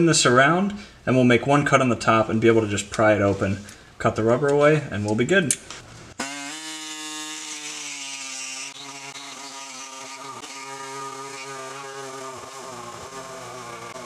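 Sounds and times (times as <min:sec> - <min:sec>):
power tool cutting: 0:06.2 - 0:14.0.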